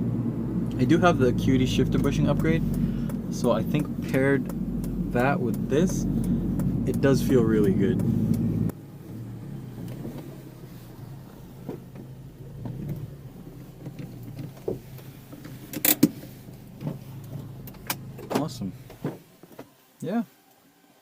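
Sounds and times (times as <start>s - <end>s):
car engine and road hum: 0.0s - 19.9s
light ticks: 2.0s - 8.8s.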